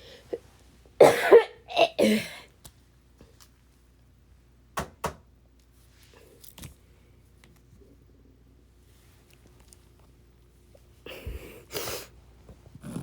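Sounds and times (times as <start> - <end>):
person coughing: 1.0 - 2.5.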